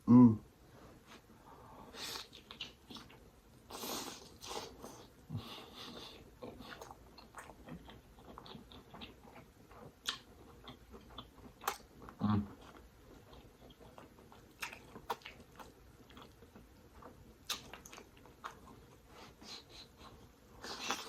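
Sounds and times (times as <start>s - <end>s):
wet mouth smacks while chewing: 2.0s - 3.2s, 6.5s - 10.3s, 12.7s - 18.7s.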